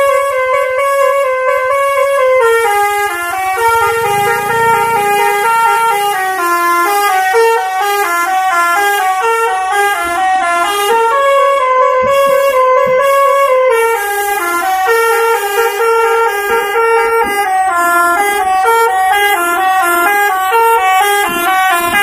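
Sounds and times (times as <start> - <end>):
air horn playing a tune: 0.0 - 22.0
low rumble: 3.4 - 5.5.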